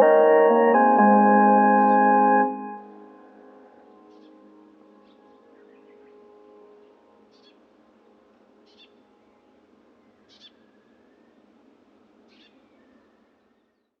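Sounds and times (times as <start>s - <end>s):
bird calls: 10.1s - 11.4s.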